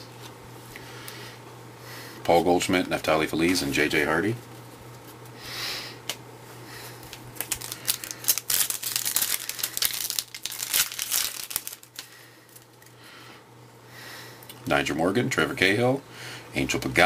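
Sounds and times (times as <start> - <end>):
wrapper tearing and crinkling: 7.3 - 12.9.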